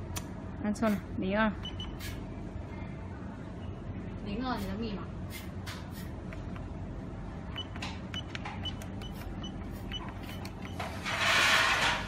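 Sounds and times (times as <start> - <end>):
electronic keypad beeping: 1.6 - 2.2, 7.5 - 10.9.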